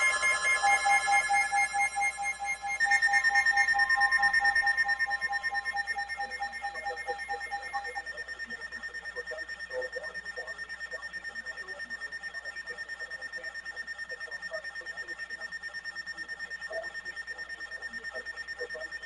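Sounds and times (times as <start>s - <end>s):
lower beeping: 0.0s - 13.3s
high electronic alarm beeping: 0.0s - 19.0s.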